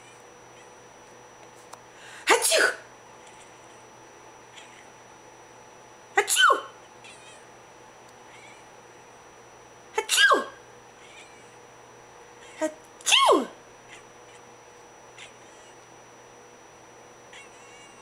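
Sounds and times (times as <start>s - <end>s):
person sneezing: 2.1s - 2.9s, 6.2s - 6.8s, 10.0s - 10.6s, 13.1s - 13.6s
cat meowing: 4.6s - 4.9s, 7.0s - 7.4s, 8.3s - 8.7s, 11.0s - 11.6s, 12.4s - 12.6s, 15.2s - 15.8s, 17.3s - 18.0s.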